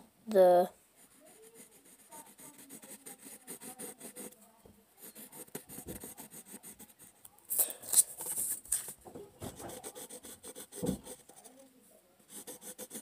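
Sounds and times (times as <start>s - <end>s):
pencil scratching on paper: 1.0s - 4.4s, 5.0s - 7.2s, 9.5s - 11.6s, 12.3s - 13.0s.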